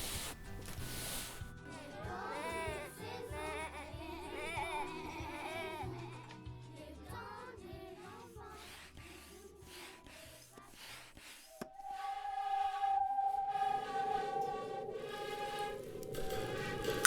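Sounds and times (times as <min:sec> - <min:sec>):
children making vocal sound effects: 0:01.7 - 0:10.8
high held note: 0:11.6 - 0:17.0
whooshing sweeps: 0:11.6 - 0:17.0.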